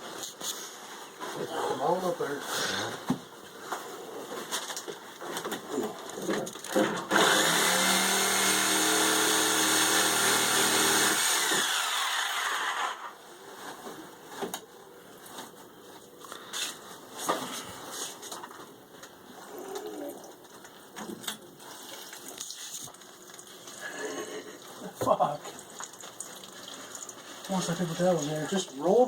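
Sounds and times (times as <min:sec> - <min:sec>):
reciprocating saw cutting pipe: 0:07.1 - 0:13.2.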